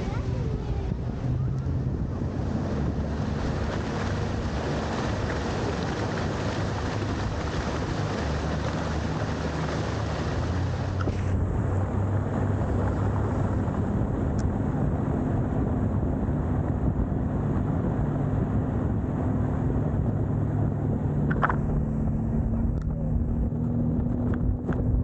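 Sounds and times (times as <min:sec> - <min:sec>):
water rushing: 0:00.0 - 0:24.9
boat engine drone: 0:00.0 - 0:25.0
wind buffeting microphone: 0:00.0 - 0:25.0.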